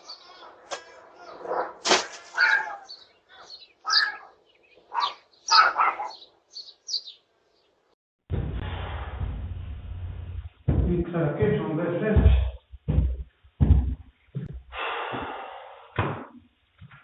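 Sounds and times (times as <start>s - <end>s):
dog barking: 0.3s - 6.3s.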